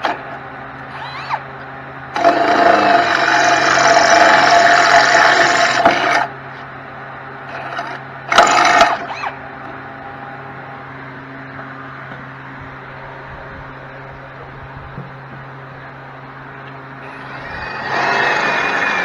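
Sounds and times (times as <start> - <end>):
power tool whining: 0.0 - 10.6, 16.8 - 19.0.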